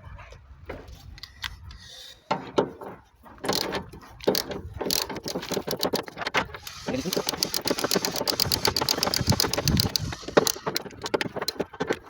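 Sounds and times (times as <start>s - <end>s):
wrench clicking on metal bolts: 3.4s - 12.0s.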